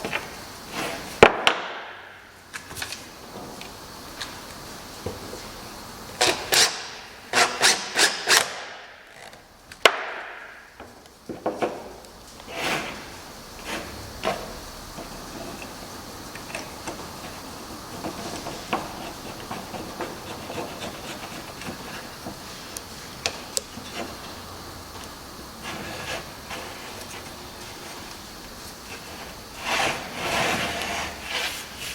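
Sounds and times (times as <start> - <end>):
sharp wood crack: 9.7 - 10.6.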